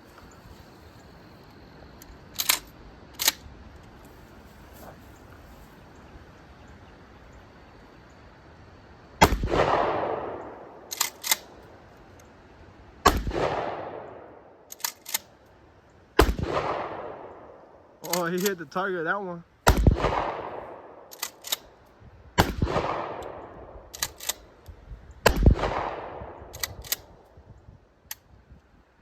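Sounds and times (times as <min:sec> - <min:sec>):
sharp clicks: 0:01.4 - 0:04.1, 0:10.4 - 0:12.3, 0:14.7 - 0:15.6, 0:18.0 - 0:18.7, 0:21.1 - 0:22.0, 0:23.2 - 0:25.4, 0:26.4 - 0:27.4
shotgun shots with long echo: 0:09.2 - 0:11.6, 0:13.0 - 0:14.7, 0:16.2 - 0:18.4, 0:19.6 - 0:21.7, 0:22.4 - 0:24.1, 0:25.2 - 0:27.2
shotgun slide being pumped: 0:24.0 - 0:24.4, 0:26.6 - 0:27.1.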